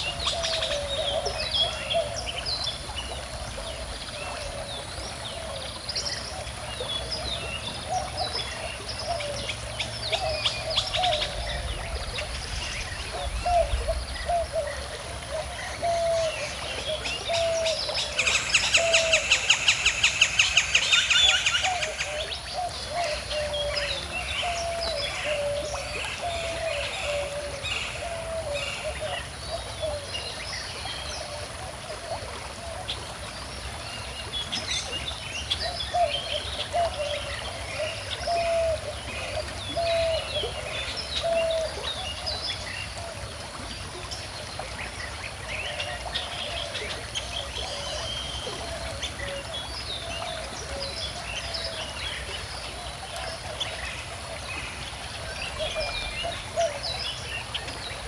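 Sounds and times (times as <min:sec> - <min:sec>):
birds singing and chirping: 0:00.0 - 0:31.0, 0:34.7 - 0:43.1, 0:53.2 - 0:58.0
faint running water: 0:00.0 - 0:58.0.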